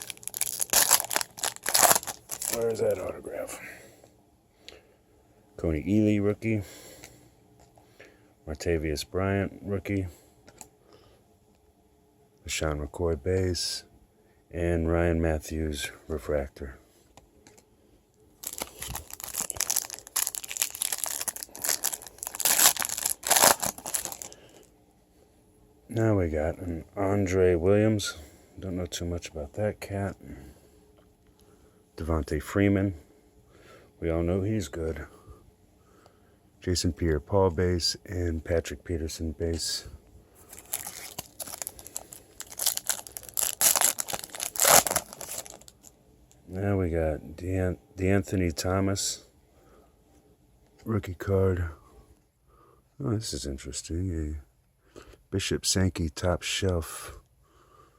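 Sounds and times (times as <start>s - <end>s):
foil wrapper tearing and crinkling: 0.0s - 2.8s, 18.4s - 24.4s, 40.4s - 45.9s.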